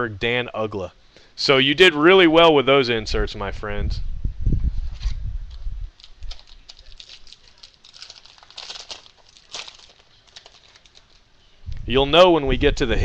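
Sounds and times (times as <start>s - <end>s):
foil wrapper crinkling: 6.0s - 11.4s.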